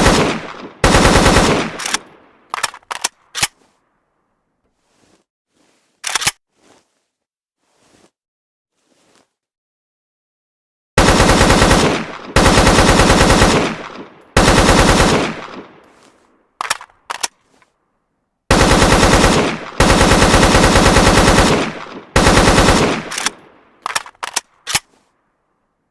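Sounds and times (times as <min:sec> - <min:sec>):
rifle full-automatic bursts: 0:00.0 - 0:03.1, 0:11.0 - 0:15.8, 0:18.5 - 0:24.9
rifle single shots: 0:00.0 - 0:03.1, 0:11.0 - 0:15.8, 0:18.5 - 0:24.9.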